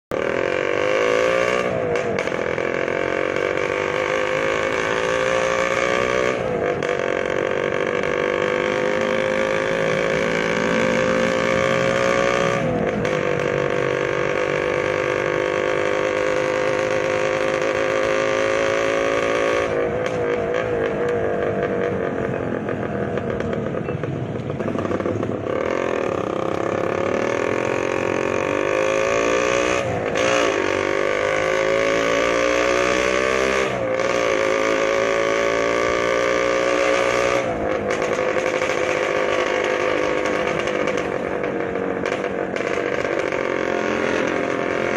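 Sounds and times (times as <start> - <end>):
motorcycle engine revving: 0.1 - 44.9.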